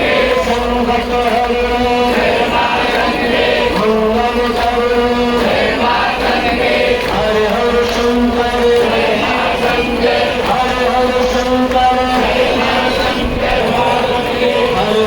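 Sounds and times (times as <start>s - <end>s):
male voices chanting: 0.0s - 15.0s.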